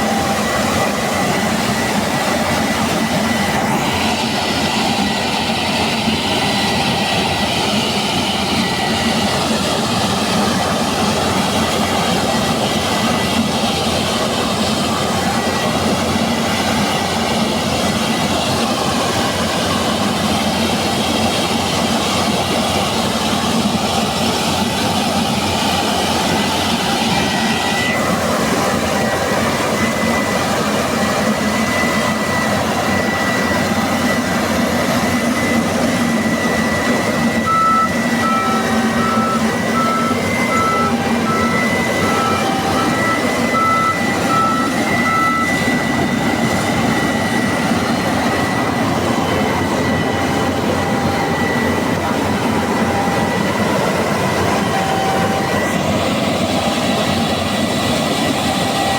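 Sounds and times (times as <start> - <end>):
combine harvester drone with whine: 0.0 - 58.9
electronic beeping: 36.2 - 50.5.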